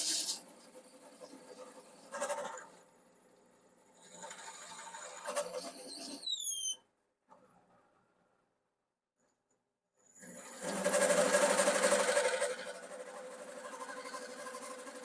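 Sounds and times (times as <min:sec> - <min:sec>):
power drill with hole saw whining: 0:03.9 - 0:06.8, 0:10.2 - 0:13.0.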